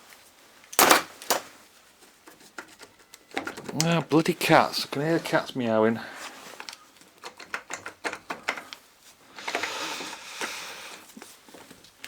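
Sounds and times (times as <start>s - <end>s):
metal tools clicking and clinking: 0.7s - 1.5s.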